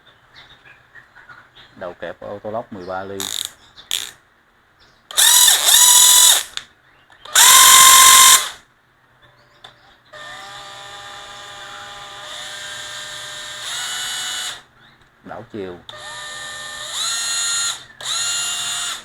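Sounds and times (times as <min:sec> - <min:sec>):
cordless drill whirring: 0:05.1 - 0:06.6, 0:07.3 - 0:08.6, 0:10.2 - 0:14.7, 0:15.9 - 0:19.0.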